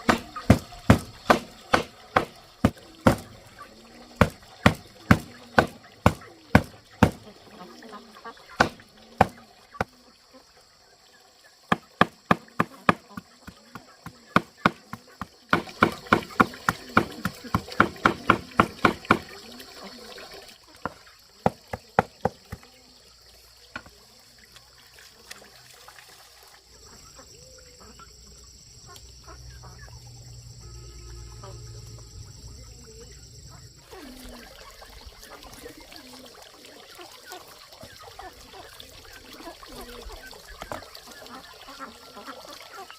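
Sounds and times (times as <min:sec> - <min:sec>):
high insect buzz: 0:26.6 - 0:34.6.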